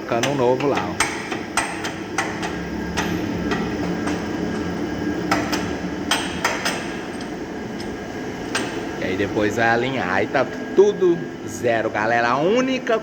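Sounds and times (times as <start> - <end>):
steady low hum: 0.0 - 13.0
hammer striking metal: 0.2 - 4.6, 5.3 - 7.9.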